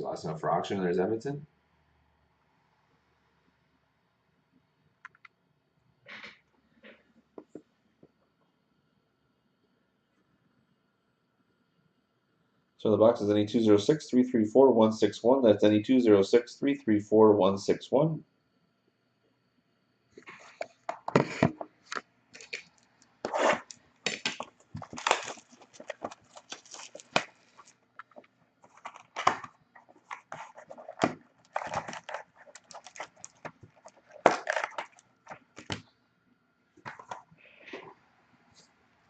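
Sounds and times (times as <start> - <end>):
plastic wrap crinkling and tearing: 22.4 - 35.8
cardboard box opening: 24.8 - 27.6, 28.7 - 35.0.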